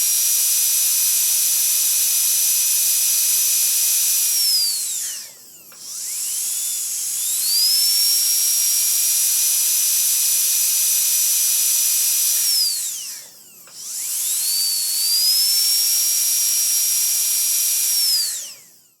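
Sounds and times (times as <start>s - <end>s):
dentist's drill whining: 0.0s - 19.0s.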